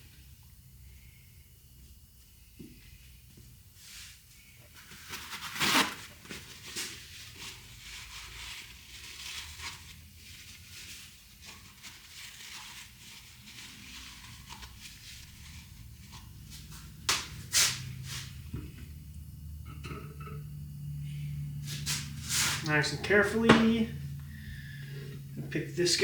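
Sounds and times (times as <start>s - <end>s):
rustling and scraping handling noises: 3.8s - 18.8s, 21.6s - 26.0s.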